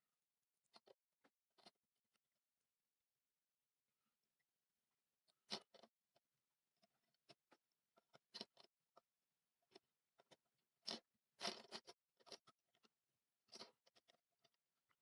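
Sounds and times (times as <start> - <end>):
small clicks taps and crackles: 0.6 - 2.3, 5.2 - 15.0.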